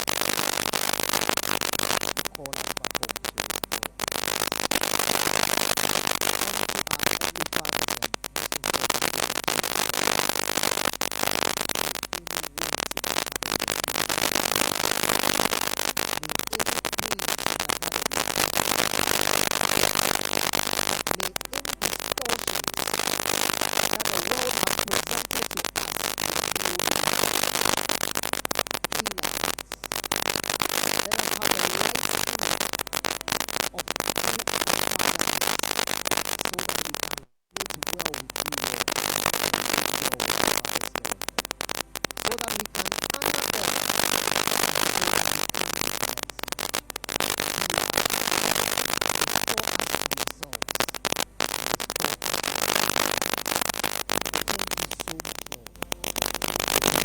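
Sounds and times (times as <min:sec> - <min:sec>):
dense crackling of fine clicks: 0:00.0 - 0:57.0
person speaking: 0:02.1 - 0:05.4, 0:06.4 - 0:09.0, 0:11.8 - 0:13.9, 0:15.9 - 0:27.4, 0:28.9 - 0:30.0, 0:30.6 - 0:32.4, 0:33.1 - 0:41.2, 0:42.2 - 0:43.9, 0:49.3 - 0:51.0, 0:54.4 - 0:56.0.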